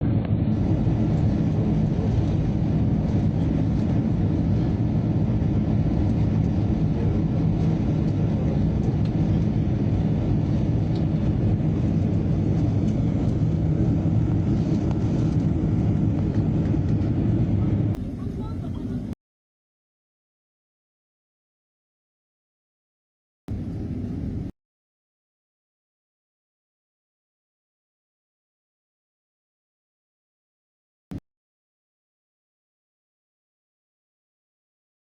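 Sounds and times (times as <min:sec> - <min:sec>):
airliner engine drone: 0:00.0 - 0:19.2, 0:23.5 - 0:24.5.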